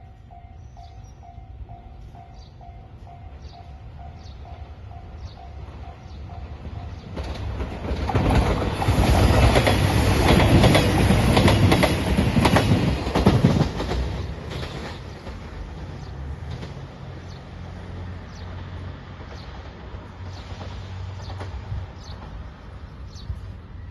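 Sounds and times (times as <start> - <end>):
diesel train passing: 0.0 - 23.9
wheels clattering over rail joints: 7.0 - 17.1.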